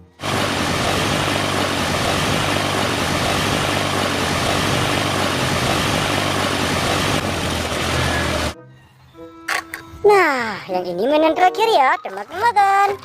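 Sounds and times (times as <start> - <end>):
propeller airplane engine drone: 0.0 - 8.6.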